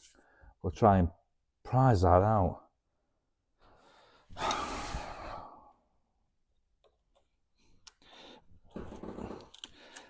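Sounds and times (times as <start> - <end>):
man sighing: 4.4 - 5.7.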